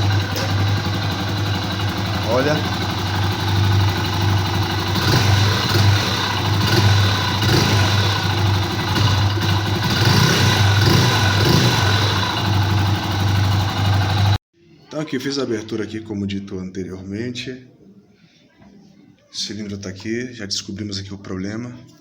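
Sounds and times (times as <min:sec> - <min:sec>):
motorcycle engine knocking: 0:00.0 - 0:14.4.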